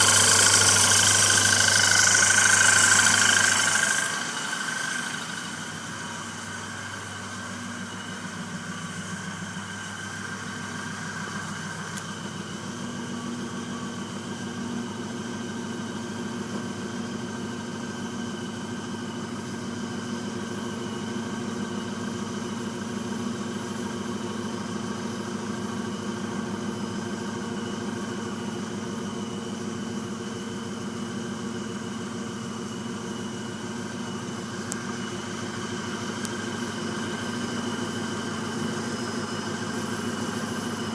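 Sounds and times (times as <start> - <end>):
piston air compressor pulsing: 0.0 - 6.9
car engine idling: 0.0 - 14.6, 32.9 - 40.9.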